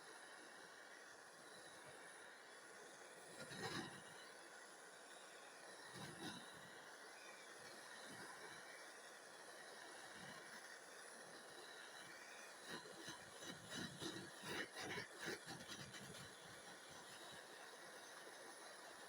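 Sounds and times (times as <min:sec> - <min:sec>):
faint irregular clicks and crackles: 0:07.7 - 0:19.0.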